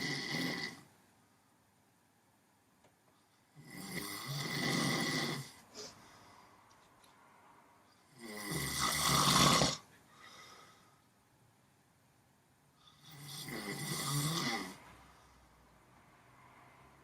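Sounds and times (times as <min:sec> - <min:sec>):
loud snores: 0:00.0 - 0:00.9, 0:03.5 - 0:05.6, 0:08.1 - 0:09.9, 0:12.9 - 0:15.1
quiet breathing: 0:05.5 - 0:08.1, 0:09.8 - 0:11.3, 0:12.7 - 0:13.2, 0:14.7 - 0:17.0.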